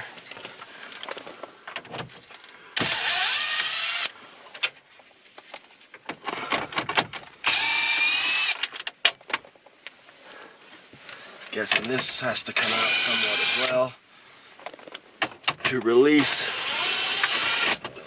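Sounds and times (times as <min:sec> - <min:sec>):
clicks and rattles of parts: 0:00.2 - 0:10.0, 0:11.1 - 0:12.8, 0:14.6 - 0:16.5
cordless drill spinning: 0:02.8 - 0:04.2, 0:07.4 - 0:08.6, 0:12.6 - 0:13.8, 0:16.2 - 0:17.9.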